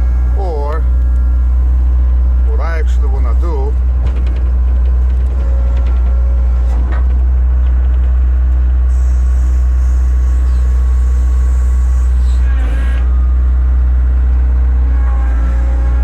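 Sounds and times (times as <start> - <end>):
excavator diesel engine idling: 0.0 - 16.0.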